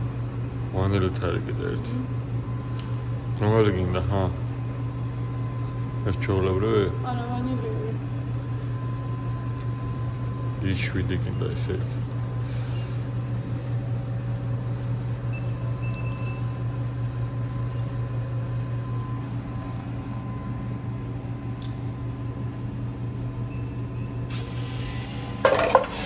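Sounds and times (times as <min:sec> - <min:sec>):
coffee maker humming: 0:24.1 - 0:26.0
coffee maker hissing and sputtering: 0:24.3 - 0:26.0.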